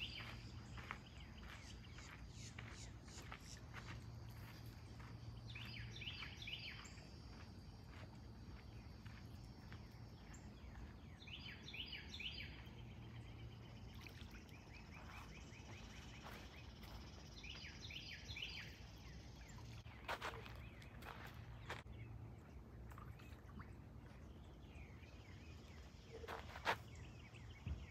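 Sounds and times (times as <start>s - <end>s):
high insect hum: 0.0s - 21.8s
songbirds calling: 0.0s - 27.9s.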